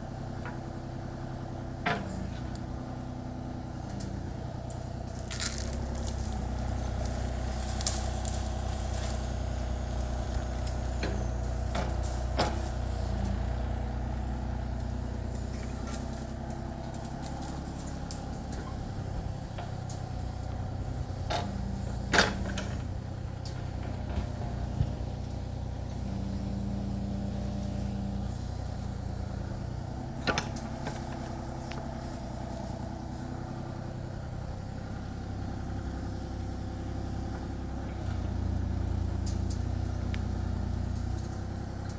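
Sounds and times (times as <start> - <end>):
excavator diesel engine running: 0.0 - 41.9.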